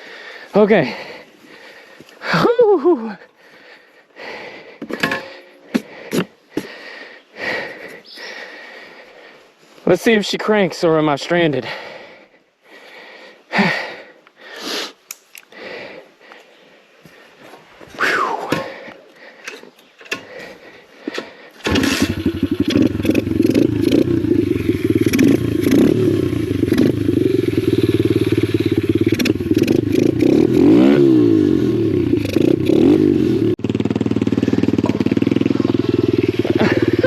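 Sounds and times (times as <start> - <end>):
motorbike engine starting and running: 20.0 - 37.0
engine revving: 21.6 - 37.0.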